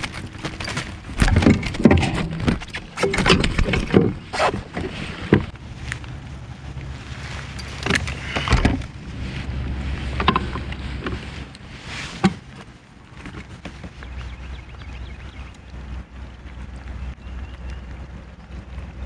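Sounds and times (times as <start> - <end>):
knocks and clatters on kayak: 0.0 - 5.6, 10.0 - 11.4, 12.1 - 14.3
wind rumble on microphone: 0.0 - 19.0.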